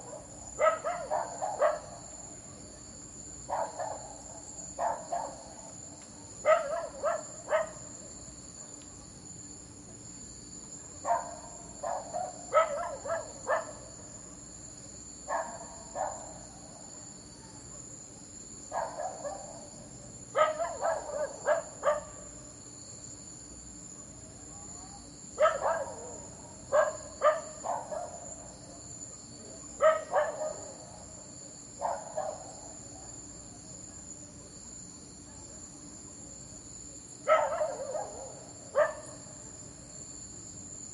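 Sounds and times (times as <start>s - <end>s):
dogs barking: 0.0s - 2.0s, 3.5s - 5.4s, 6.4s - 7.8s, 11.0s - 13.9s, 15.3s - 16.4s, 18.7s - 19.7s, 20.4s - 22.3s, 25.4s - 28.3s, 29.8s - 30.8s, 31.8s - 32.6s, 37.3s - 39.2s
crickets chirring: 0.0s - 40.9s.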